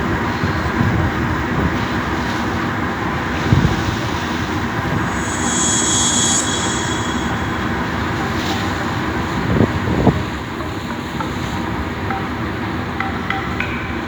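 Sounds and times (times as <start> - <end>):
brief high hiss: 4.3 - 9.0.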